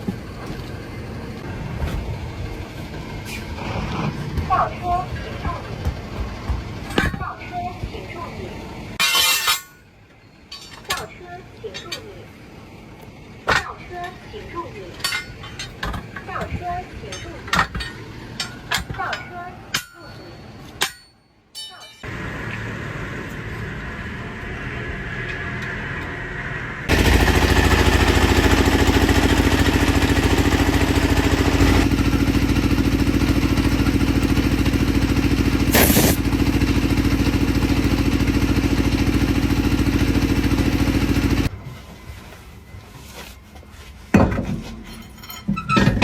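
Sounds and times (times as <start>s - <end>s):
loud machine pulsing: 22.1s - 41.5s
short hissing burst: 35.7s - 36.2s.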